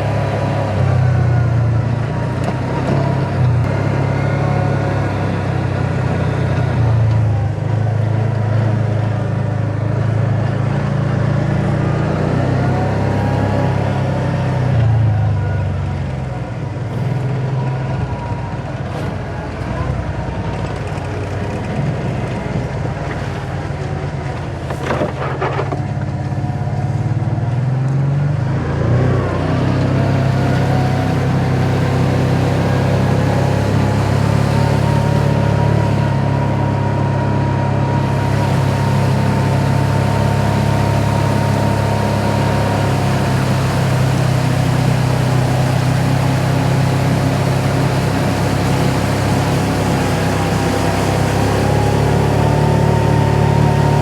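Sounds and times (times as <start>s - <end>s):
utility vehicle engine running: 0.0s - 54.0s.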